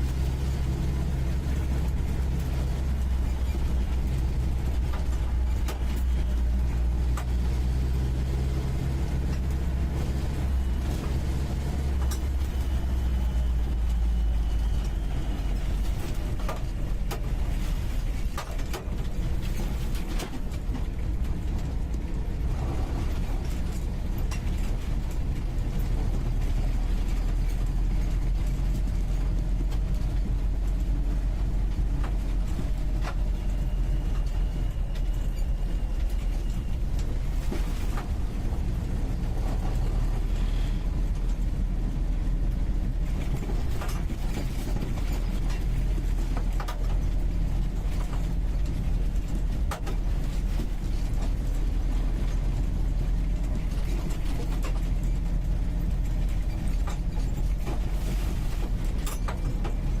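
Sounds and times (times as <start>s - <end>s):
car engine running: 0.0s - 60.0s
clicks and rattles in cabin: 12.0s - 40.2s, 42.4s - 60.0s.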